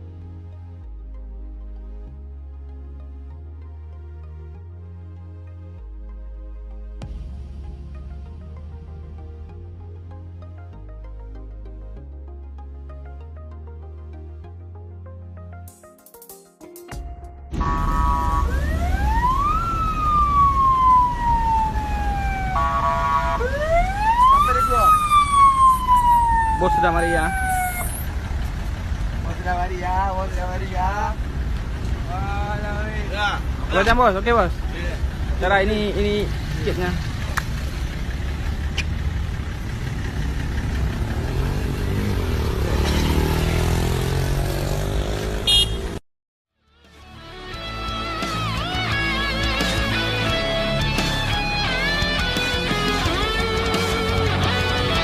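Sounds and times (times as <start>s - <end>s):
horn-like chord blast: 17.5s - 18.9s
road noise: 17.5s - 46.0s, 46.8s - 55.0s
electronic siren wailing: 17.6s - 28.1s
car engine running: 34.5s - 44.1s.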